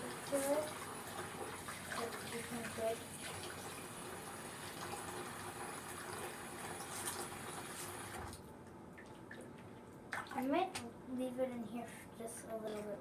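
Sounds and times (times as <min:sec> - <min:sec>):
water running from tap into sink: 0:00.0 - 0:08.4.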